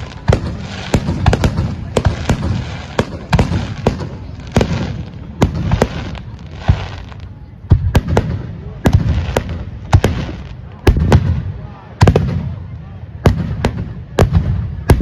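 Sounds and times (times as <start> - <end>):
fireworks bangs: 0.0 - 15.0
fireworks crackling: 0.0 - 15.0.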